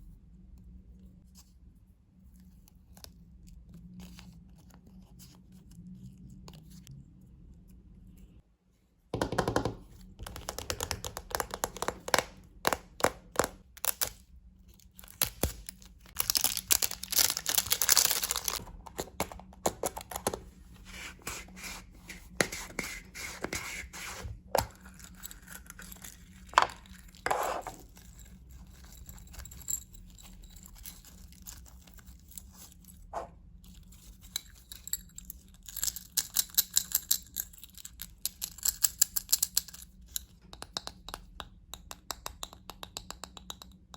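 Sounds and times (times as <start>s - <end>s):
foil tearing and crinkling: 16.2s - 18.6s.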